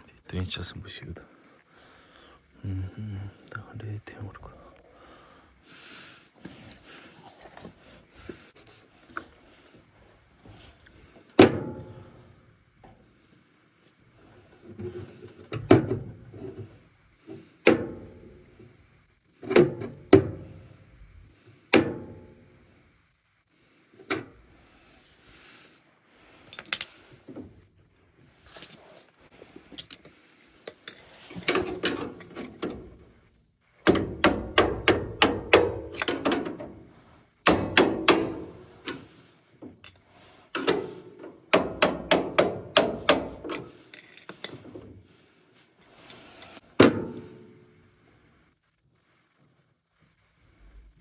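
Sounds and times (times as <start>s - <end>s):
hand tool strikes on metal: 37.5s - 39.0s, 41.5s - 43.6s.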